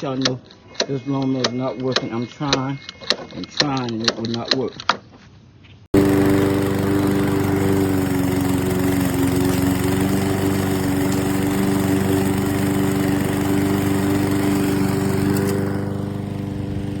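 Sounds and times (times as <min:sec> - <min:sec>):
push mower engine running: 0:06.0 - 0:17.0.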